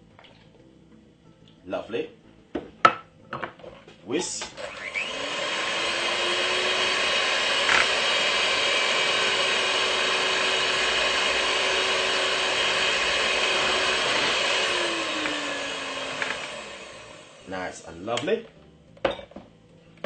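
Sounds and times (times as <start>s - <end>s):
electric whisk running: 4.4s - 17.7s.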